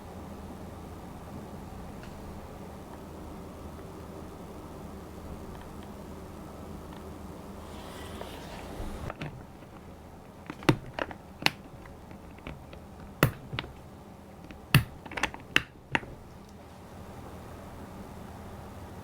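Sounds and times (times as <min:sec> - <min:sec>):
keyboard clicks and taps: 0:09.2 - 0:13.9, 0:14.5 - 0:16.6.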